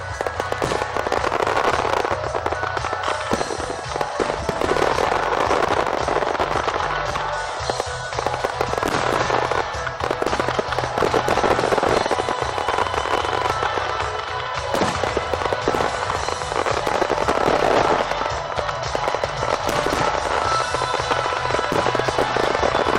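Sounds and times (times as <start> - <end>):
fireworks crackling: 0.0 - 22.9
music playing: 0.0 - 22.9.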